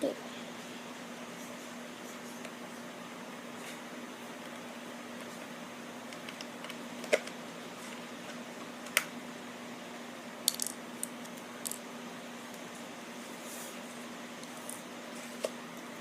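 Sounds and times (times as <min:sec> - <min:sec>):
steady low hum: 0:00.0 - 0:16.0
plastic toy parts clicking: 0:10.5 - 0:10.8.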